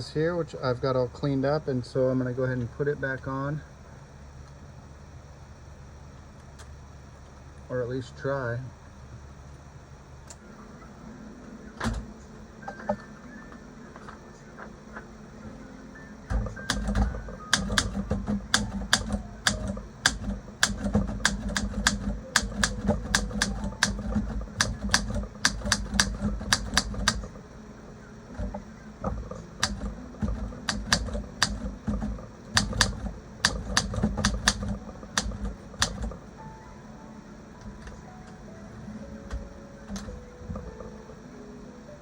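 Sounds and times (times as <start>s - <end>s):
manual typewriter keystrokes: 16.3s - 27.4s, 28.3s - 36.3s, 37.6s - 41.0s.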